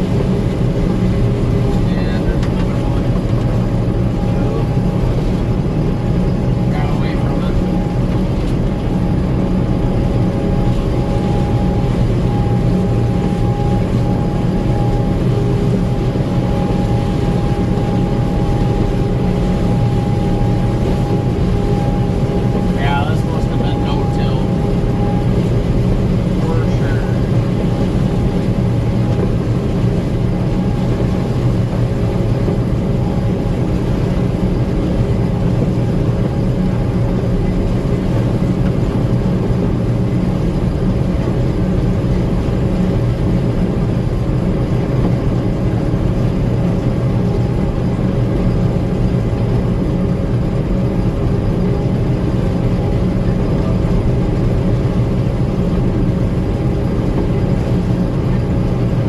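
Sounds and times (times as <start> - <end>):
combine engine drone: 0.0 - 59.0.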